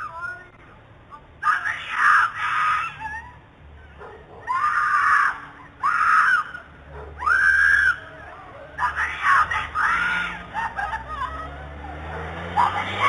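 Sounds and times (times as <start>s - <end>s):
woman screaming: 1.6s - 3.4s, 4.4s - 11.9s, 12.6s - 13.0s.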